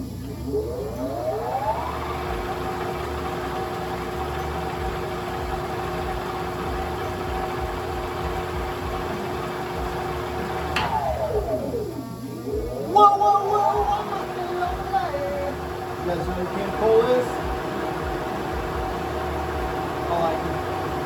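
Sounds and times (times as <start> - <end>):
lathe drive whining: 0.0 - 21.0
low hum: 0.0 - 21.0.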